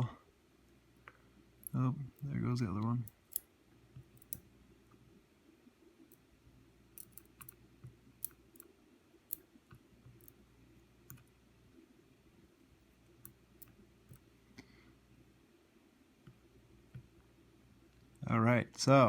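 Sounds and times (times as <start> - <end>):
small metal parts clicking: 3.1 - 4.4, 6.9 - 7.6.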